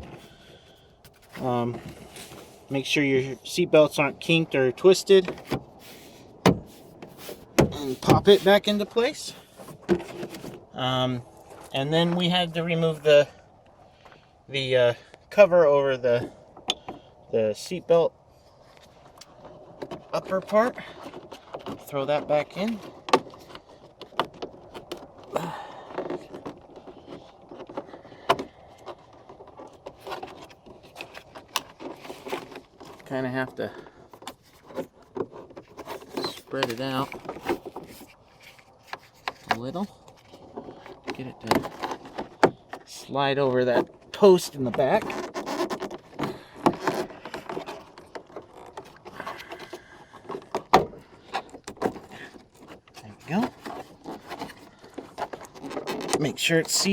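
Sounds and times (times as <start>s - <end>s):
plastic trim rubbing and creaking: 3.7s - 13.0s, 18.8s - 56.9s.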